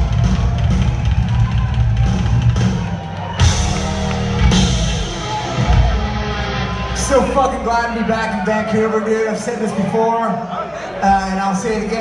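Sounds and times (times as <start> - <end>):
rock drum kit playing: 0.0 - 8.0.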